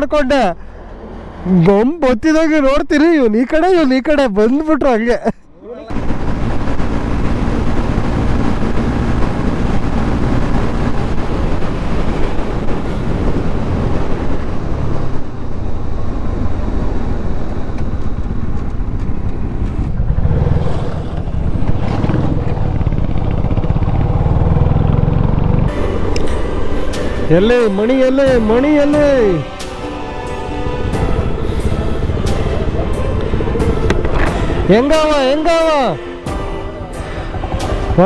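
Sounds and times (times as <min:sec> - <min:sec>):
motorcycle engine running: 0:05.9 - 0:29.6
wind noise on microphone: 0:05.9 - 0:38.0.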